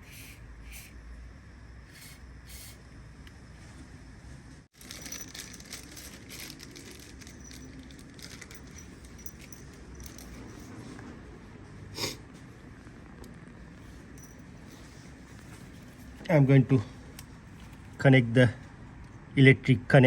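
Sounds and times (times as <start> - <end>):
steady low hum: 0.0 - 19.9
small clicks and rustling: 4.8 - 10.8
hands handling engine parts: 4.8 - 10.9.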